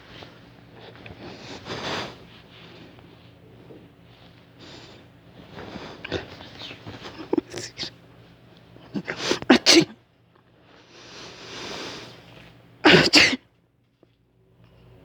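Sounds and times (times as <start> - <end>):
person sneezing loudly: 7.0 - 7.9, 8.9 - 10.0, 12.8 - 13.4.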